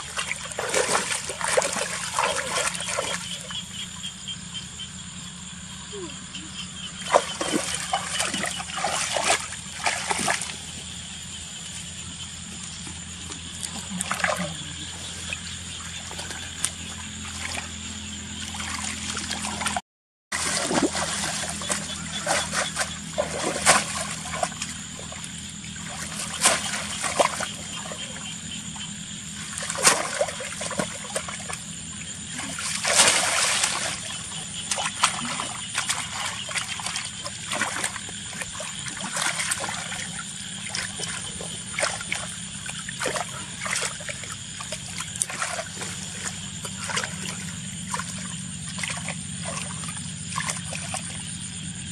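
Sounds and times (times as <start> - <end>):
water splashing and trickling: 0.0 - 3.9, 6.8 - 51.8.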